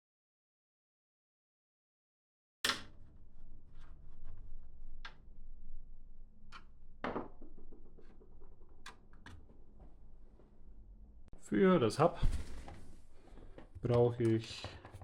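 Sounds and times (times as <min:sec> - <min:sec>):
small hard parts clicking and knocking: 0:06.5 - 0:09.9, 0:13.1 - 0:15.0.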